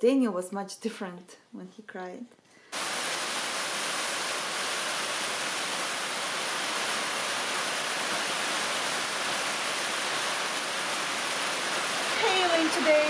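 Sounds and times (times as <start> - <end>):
rain and hail falling: 2.7 - 13.0.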